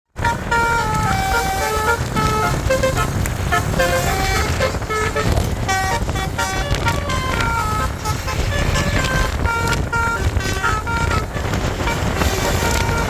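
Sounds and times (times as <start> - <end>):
musical bus horn melody: 0.1 - 13.0
low rumble: 0.2 - 13.0.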